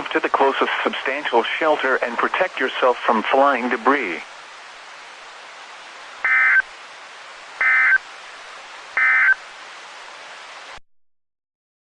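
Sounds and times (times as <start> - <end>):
radio hiss: 0.0 - 4.7, 6.2 - 6.7, 7.6 - 8.0, 9.0 - 9.4
digital data warble bursts: 6.2 - 6.6.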